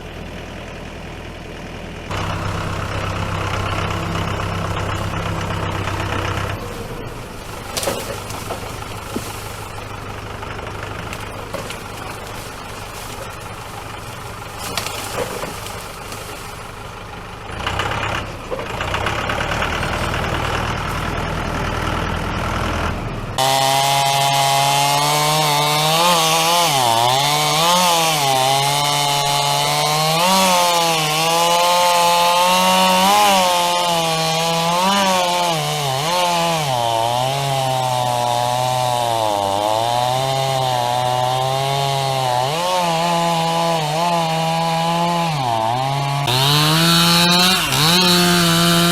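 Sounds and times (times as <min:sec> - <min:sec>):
engine idling: 0:00.0 - 0:23.4
chainsaw cutting wood: 0:02.1 - 0:21.9, 0:23.4 - 0:48.9.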